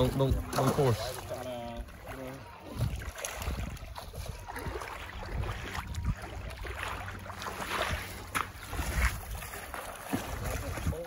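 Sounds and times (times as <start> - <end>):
river water splashing: 0.0 - 11.0
wind rumbling on microphone: 2.7 - 11.0.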